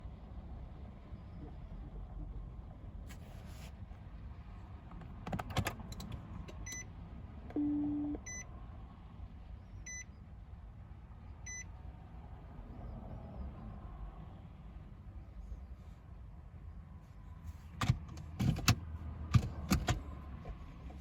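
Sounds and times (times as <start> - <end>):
long low car warning beep: 7.5 - 8.5, 9.8 - 10.1, 11.4 - 11.7.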